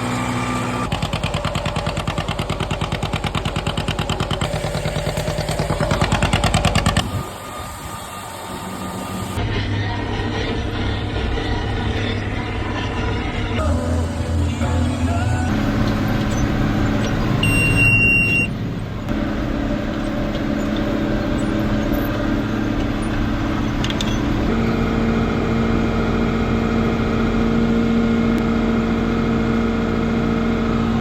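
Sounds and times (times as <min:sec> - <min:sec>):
tractor engine running: 0:00.0 - 0:31.0
short high-pitched beep: 0:17.4 - 0:18.5.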